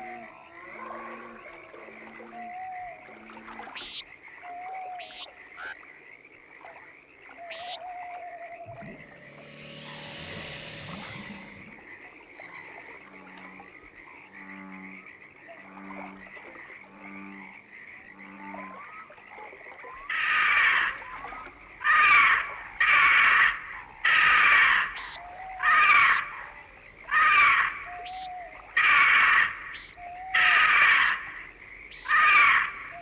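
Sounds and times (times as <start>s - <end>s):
frogs croaking: 0.0s - 33.0s
steady high chirring: 8.6s - 12.0s
raspy frog calls: 13.8s - 33.0s.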